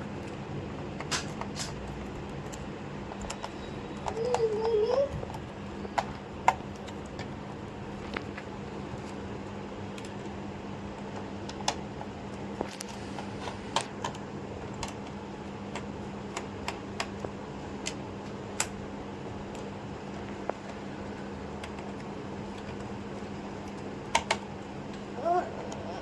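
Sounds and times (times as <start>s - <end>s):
plastic laptop parts clicking: 10.9s - 18.7s, 20.5s - 24.6s.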